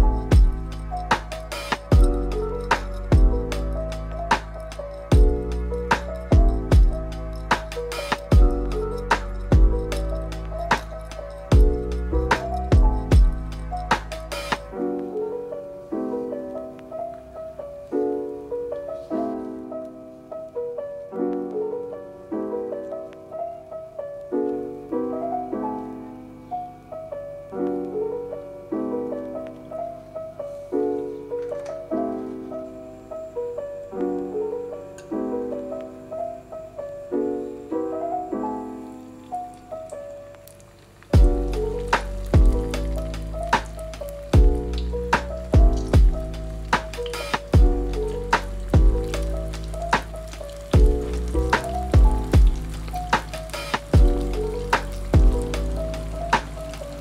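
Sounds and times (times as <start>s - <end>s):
gentle piano music: 0.0s - 57.0s.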